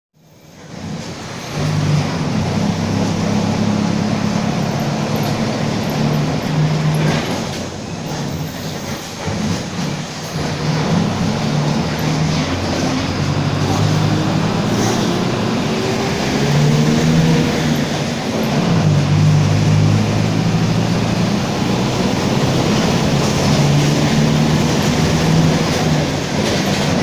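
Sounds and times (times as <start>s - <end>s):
bus engine drone: 0.2s - 27.0s
growling differential: 9.3s - 27.0s.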